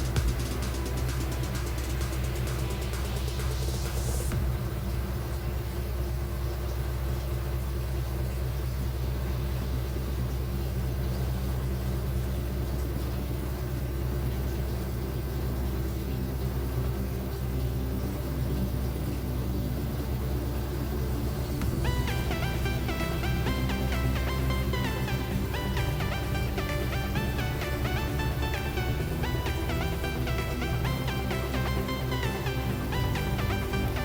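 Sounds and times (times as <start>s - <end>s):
washing machine running: 0.0s - 34.0s.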